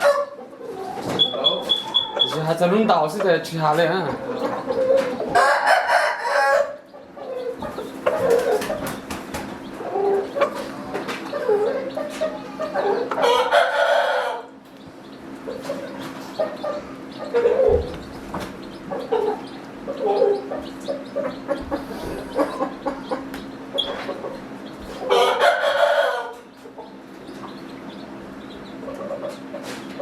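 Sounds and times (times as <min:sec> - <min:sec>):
chickens clucking: 0:00.0 - 0:30.0
rooster crowing: 0:05.3 - 0:06.8, 0:13.1 - 0:14.5, 0:25.0 - 0:26.4
steady low hum: 0:06.7 - 0:30.0.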